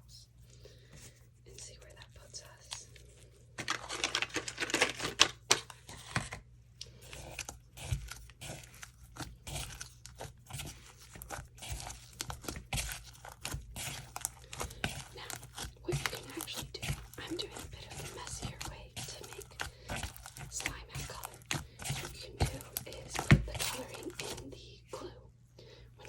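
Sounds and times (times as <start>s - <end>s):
slime being squished: 7.0s - 24.4s.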